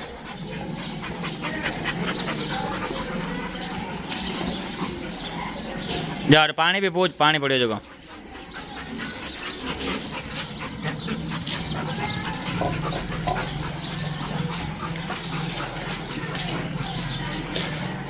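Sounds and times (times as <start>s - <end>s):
dog claws clicking and scuffling: 7.9s - 18.0s.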